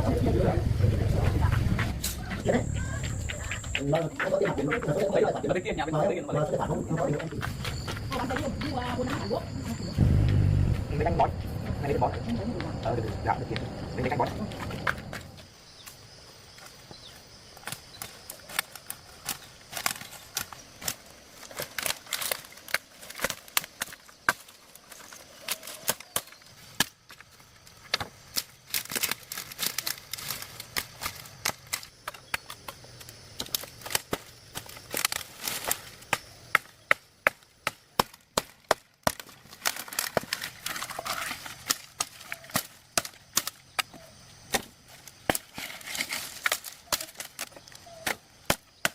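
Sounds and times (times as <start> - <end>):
hand tool chopping wood: 33.4 - 48.9.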